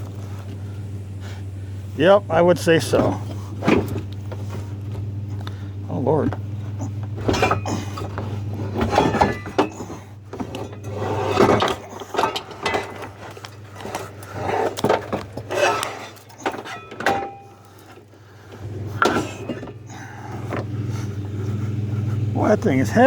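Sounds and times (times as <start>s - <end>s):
metal equipment clanking and scraping: 2.0s - 23.0s
metallic rings: 6.4s - 23.0s.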